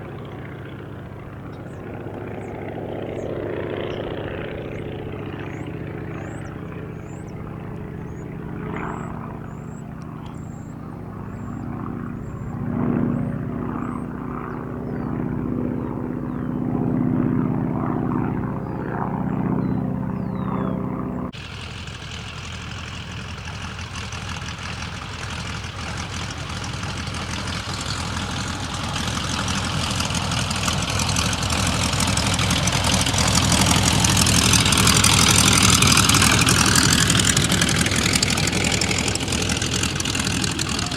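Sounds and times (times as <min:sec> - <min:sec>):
biplane engine and propeller: 0:00.0 - 0:40.9
birds chirping faintly: 0:01.1 - 0:17.2, 0:17.9 - 0:40.9.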